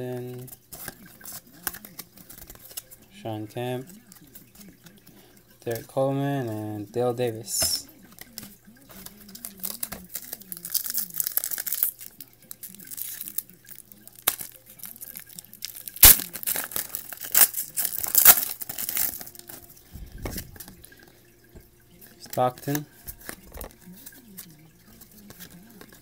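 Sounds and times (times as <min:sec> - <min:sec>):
cards rustling and clicking: 0:00.2 - 0:06.7, 0:07.5 - 0:26.0
foil wrapper tearing and crinkling: 0:00.7 - 0:03.0, 0:08.2 - 0:19.6.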